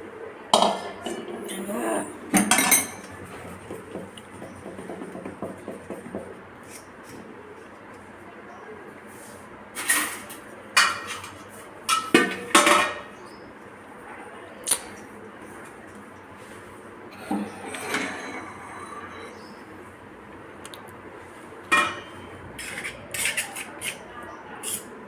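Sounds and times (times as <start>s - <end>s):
spoon clinking on metal cookware: 2.4s - 3.1s, 21.7s - 24.0s.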